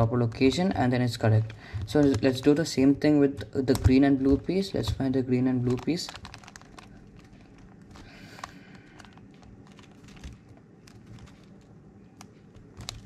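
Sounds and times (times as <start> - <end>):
plastic puzzle clicking and rattling: 3.4 - 13.0.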